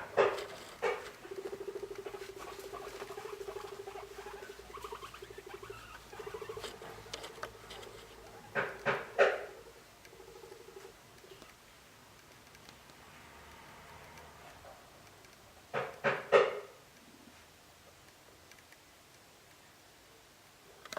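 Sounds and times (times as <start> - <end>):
guinea pig rumbling purr: 0.0 - 11.5
guinea pig squeaks: 0.0 - 11.6.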